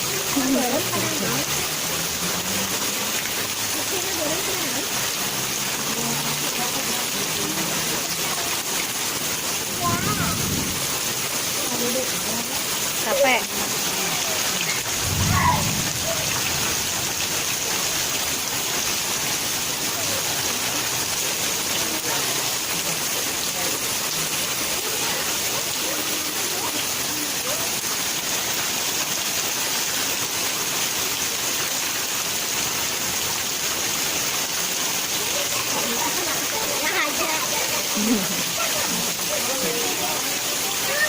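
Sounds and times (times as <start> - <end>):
heavy rain: 0.0 - 41.0
low rumble: 14.9 - 17.0.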